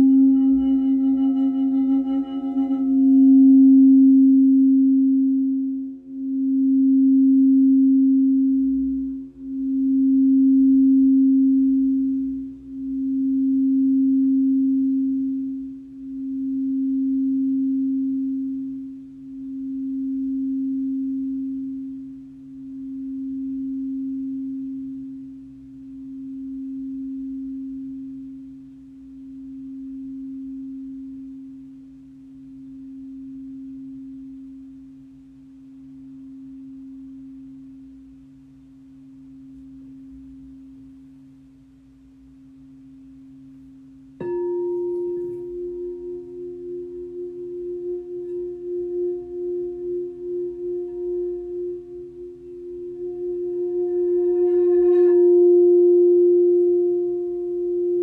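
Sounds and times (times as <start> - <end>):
singing bowl struck: 0.0 - 4.7, 44.2 - 57.5
singing bowl ringing: 0.0 - 15.6, 44.2 - 58.0.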